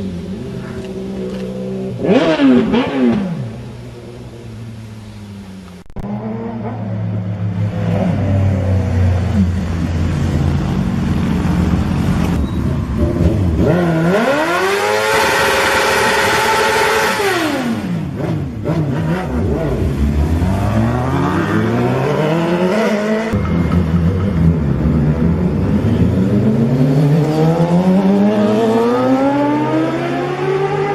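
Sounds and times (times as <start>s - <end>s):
motorcycle engine revving: 0.0s - 4.3s, 6.0s - 30.9s.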